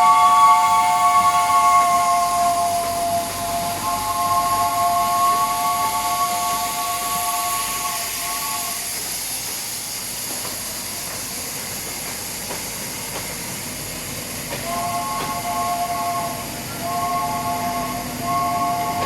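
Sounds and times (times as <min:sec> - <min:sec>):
steam locomotive whistle: 0:00.0 - 0:09.0, 0:14.6 - 0:19.0
steam hiss: 0:00.0 - 0:19.0
train running noise: 0:00.0 - 0:19.0.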